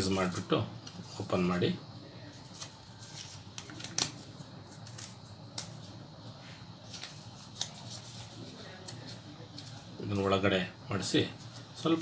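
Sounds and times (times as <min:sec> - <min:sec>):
paper crackling and clicking: 0:02.4 - 0:05.9, 0:06.9 - 0:10.3.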